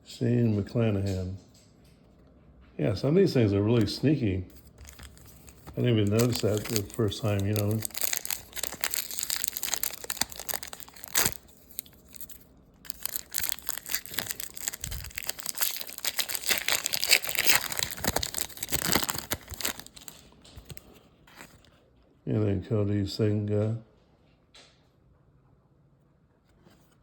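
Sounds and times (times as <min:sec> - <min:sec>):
foil wrapper crinkling and tearing: 0:04.5 - 0:21.7.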